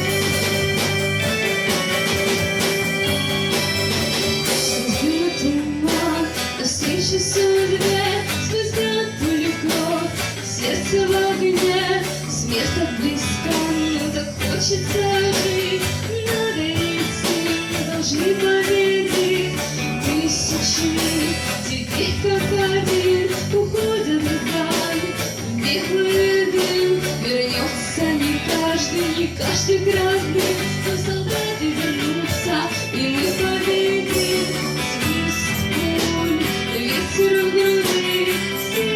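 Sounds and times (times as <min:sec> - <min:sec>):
wavering lead melody: 0:00.0 - 0:05.8, 0:33.7 - 0:38.9
electric guitar: 0:00.0 - 0:38.9
rock band playing live: 0:00.0 - 0:38.9.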